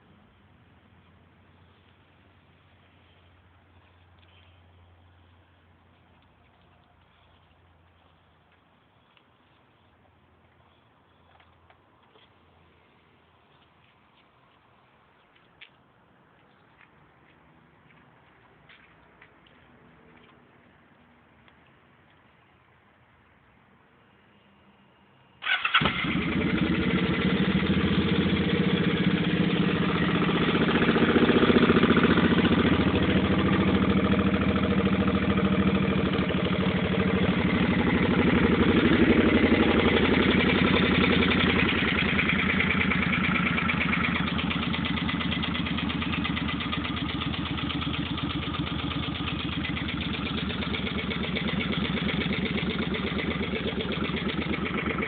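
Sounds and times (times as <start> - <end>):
engine tapping noise: 25.4 - 55.0
motorcycle engine starting and idling: 25.4 - 55.0.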